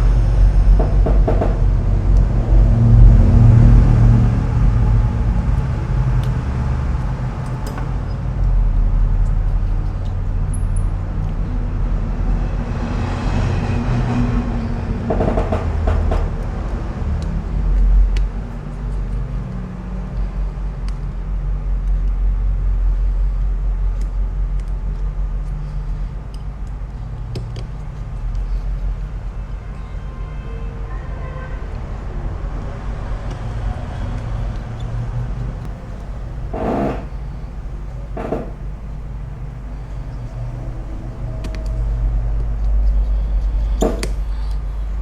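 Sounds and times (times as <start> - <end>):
road traffic rumble: 0.0 - 45.0.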